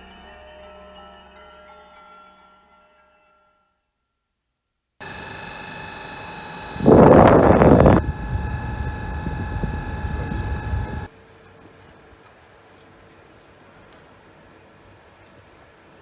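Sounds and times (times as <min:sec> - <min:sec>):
air conditioner motor hum: 0:05.0 - 0:11.1
loud rough noise: 0:05.0 - 0:11.1.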